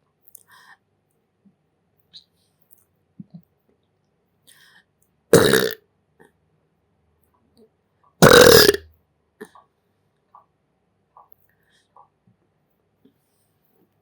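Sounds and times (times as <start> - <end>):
person belching loudly: 5.4 - 5.8, 8.2 - 8.8.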